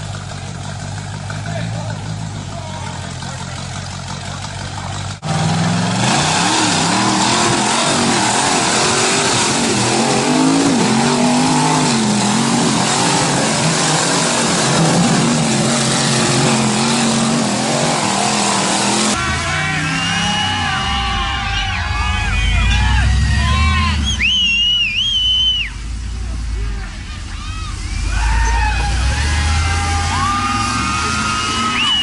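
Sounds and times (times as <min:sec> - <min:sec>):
engine running at low revs: 0:00.0 - 0:32.0
engine revving hard: 0:05.2 - 0:25.8, 0:27.8 - 0:32.0.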